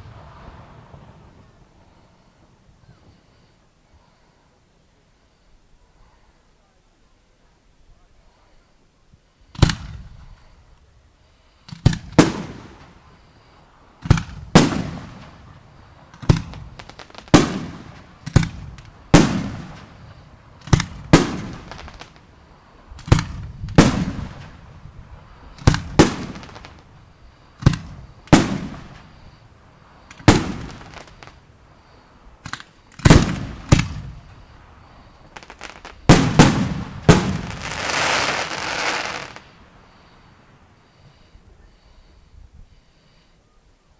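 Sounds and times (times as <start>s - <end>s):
fireworks bursting with echoes: 0.0s - 3.2s, 9.5s - 10.6s, 11.7s - 41.2s.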